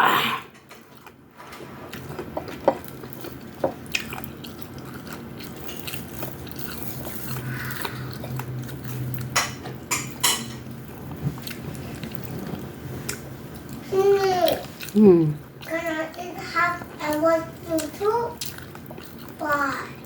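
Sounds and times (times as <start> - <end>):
person chewing and biting: 1.9 - 13.8, 17.8 - 19.4.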